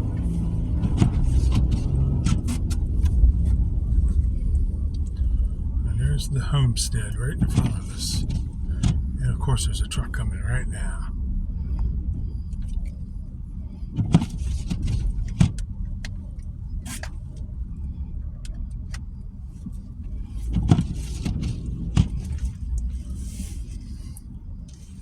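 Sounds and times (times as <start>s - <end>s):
road and engine rumble in car: 0.0s - 25.0s
sharp knocks and bumps: 20.5s - 22.5s.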